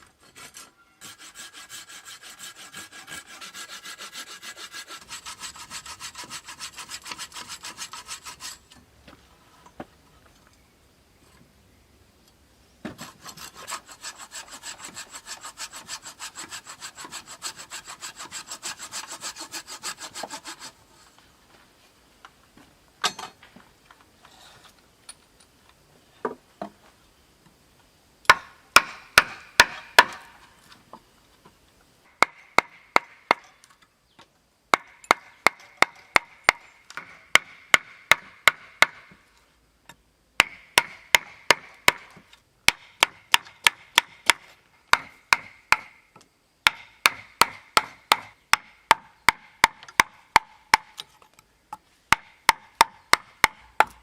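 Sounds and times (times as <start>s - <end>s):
hand tool striking wood: 28.3s - 30.4s, 32.2s - 33.6s, 34.7s - 39.2s, 40.4s - 46.0s, 46.6s - 51.1s, 52.1s - 54.0s.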